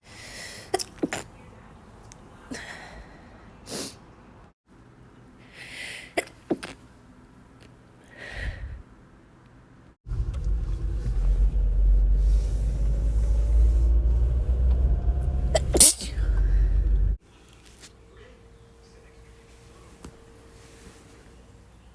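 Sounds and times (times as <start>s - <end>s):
steady low rumble: 10.1s - 17.2s
woman sneezing: 15.6s - 16.3s.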